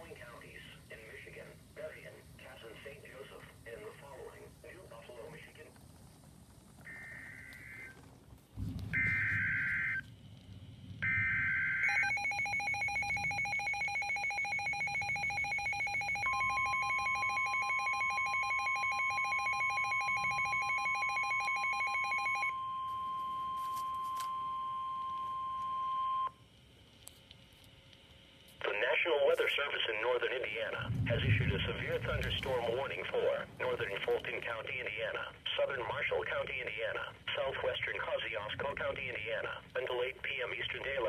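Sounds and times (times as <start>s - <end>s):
steady single-pitch warning tone: 6.8s - 8.0s, 8.8s - 10.1s, 11.0s - 26.6s
pulsing electronic alarm beep: 8.9s - 10.1s, 11.0s - 26.3s.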